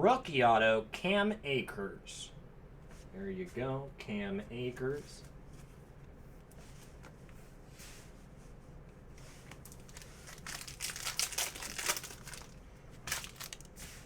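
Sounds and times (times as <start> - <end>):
wrapper tearing and crinkling: 9.6 - 13.8.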